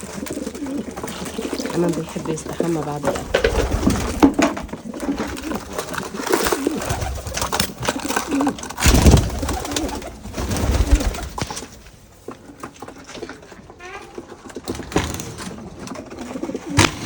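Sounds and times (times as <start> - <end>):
rustling bursts: 0.0 - 12.2
pigeons cooing: 0.0 - 17.0.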